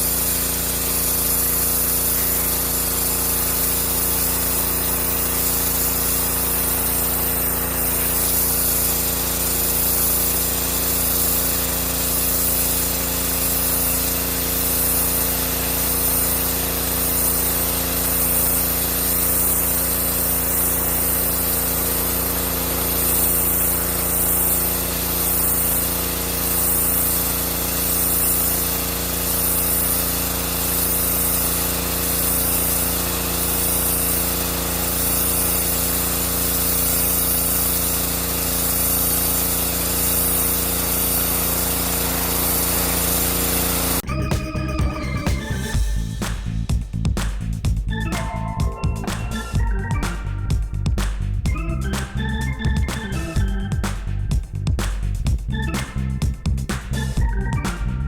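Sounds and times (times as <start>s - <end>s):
high-pressure water spray hiss: 0.0s - 44.0s
pressure washer hum: 0.0s - 58.0s.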